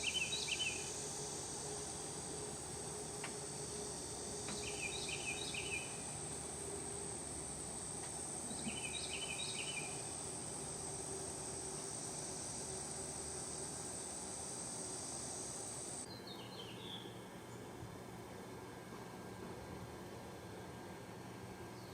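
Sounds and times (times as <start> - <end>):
bird chirps: 0.0 - 0.9, 4.5 - 6.0, 8.5 - 10.1
insects trilling: 0.0 - 17.1.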